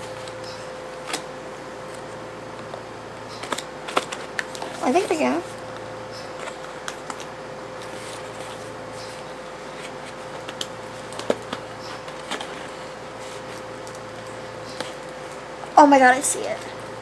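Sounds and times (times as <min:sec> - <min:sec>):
faint steady hum: 0:00.0 - 0:17.0
packaging clicks taps and scrapes: 0:03.4 - 0:09.2, 0:09.8 - 0:15.2.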